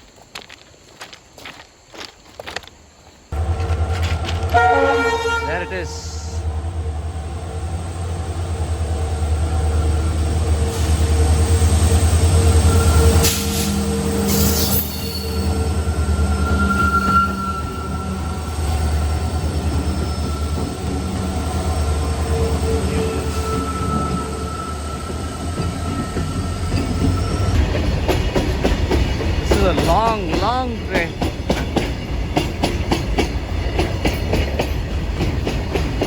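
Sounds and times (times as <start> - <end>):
train rumbling past: 3.3 - 36.0
metallic wheel squeal: 10.0 - 28.1.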